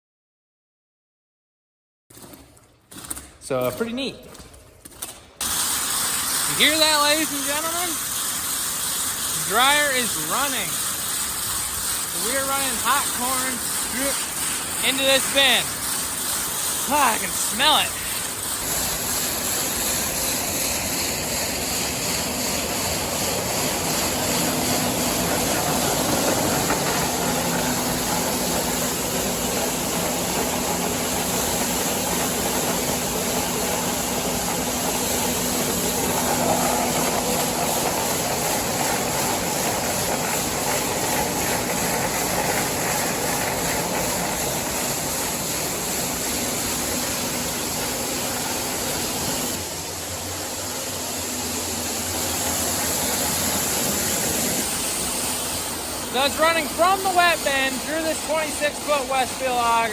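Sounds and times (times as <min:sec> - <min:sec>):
grain dryer mechanical noise: 0:03.0 - 0:59.9.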